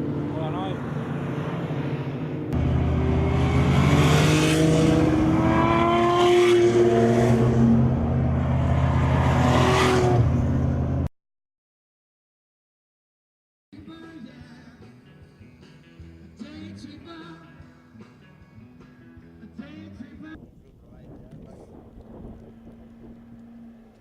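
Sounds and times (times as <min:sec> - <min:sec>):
car engine accelerating hard: 0:00.0 - 0:11.1, 0:21.8 - 0:24.0.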